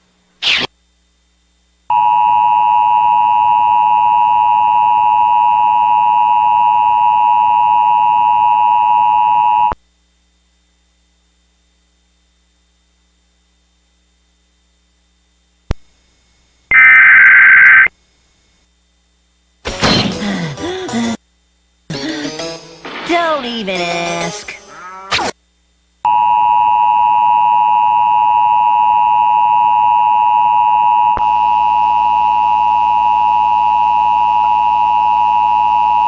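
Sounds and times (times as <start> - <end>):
burst of higher tones: 16.7 - 17.9
two-tone alarm: 16.7 - 17.9.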